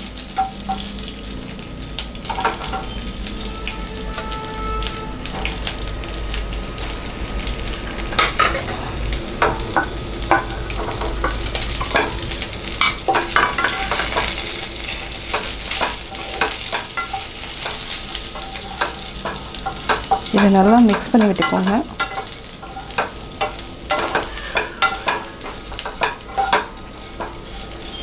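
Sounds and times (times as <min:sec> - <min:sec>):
light sizzle: 0:00.0 - 0:28.0
spatula scraping a pan: 0:09.4 - 0:28.0.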